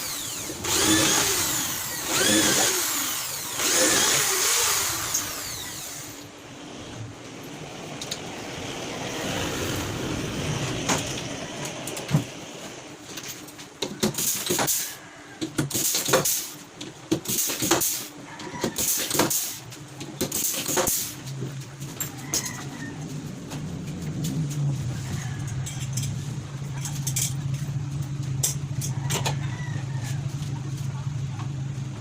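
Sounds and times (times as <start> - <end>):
metallic clatter of tools: 25.4 - 29.4.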